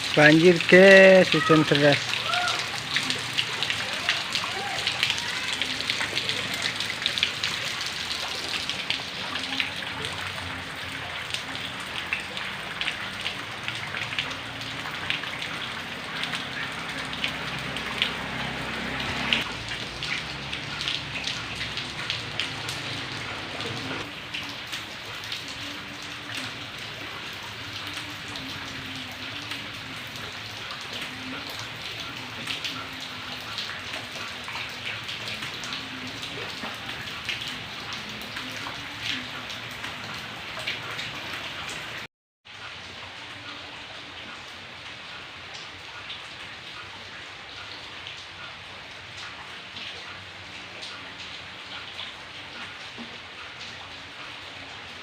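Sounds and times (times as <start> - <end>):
heavy rain falling: 0.0 - 55.0
raindrops ticking on a surface: 0.0 - 55.0.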